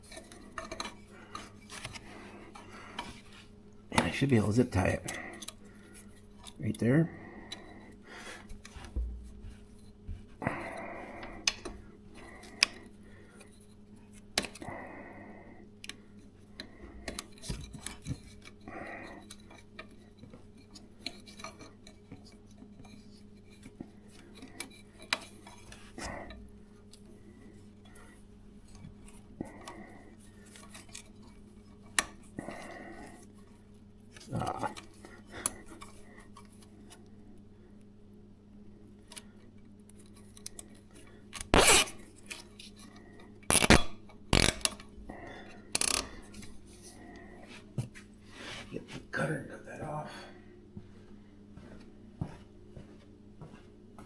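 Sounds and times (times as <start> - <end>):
steady low hum: 0.0 - 54.0
zip ties ratcheting: 41.4 - 42.0, 43.5 - 44.8, 45.8 - 46.1.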